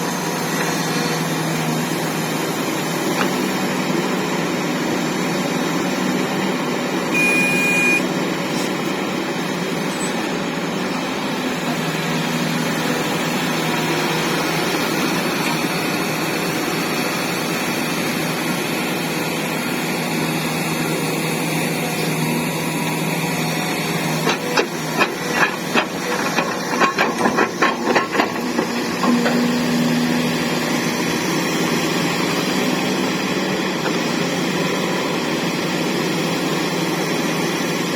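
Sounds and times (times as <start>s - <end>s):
heavy diesel machinery running: 0.0s - 37.9s
short high tone: 7.2s - 8.1s.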